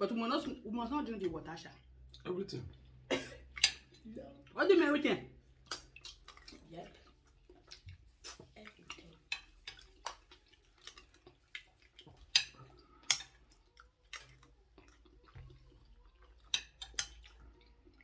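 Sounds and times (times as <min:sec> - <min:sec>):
eating clicks and smacks: 0:05.5 - 0:18.0.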